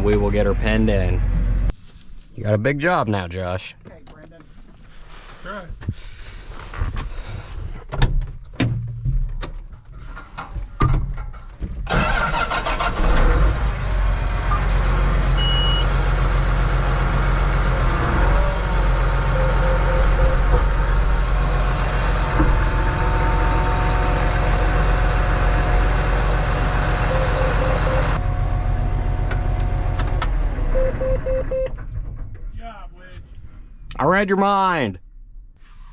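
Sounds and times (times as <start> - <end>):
diesel engine cranking and running: 11.8 - 32.6.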